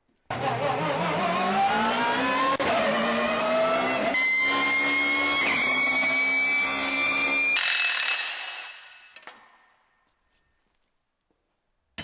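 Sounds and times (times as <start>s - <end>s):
car engine accelerating hard: 0.3s - 7.4s
high whine: 7.6s - 9.3s.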